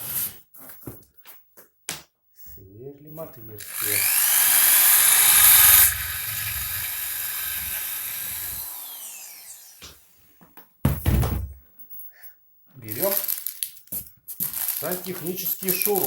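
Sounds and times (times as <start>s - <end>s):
electric drill boring wood: 3.6s - 10.1s.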